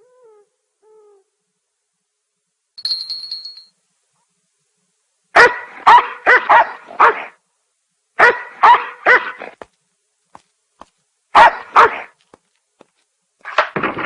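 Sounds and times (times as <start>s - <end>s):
cartoon dog barking: 5.4s - 7.4s, 8.2s - 9.6s, 11.4s - 12.1s.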